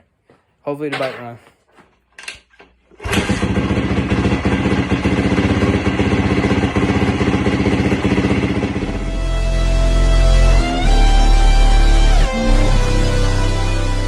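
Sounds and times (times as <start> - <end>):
motorcycle engine starting and running: 3.0 - 13.1.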